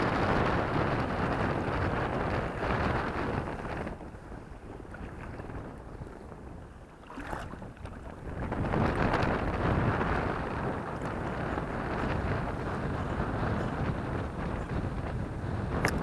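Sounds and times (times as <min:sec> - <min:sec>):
wind buffeting microphone: 0:00.0 - 0:16.0.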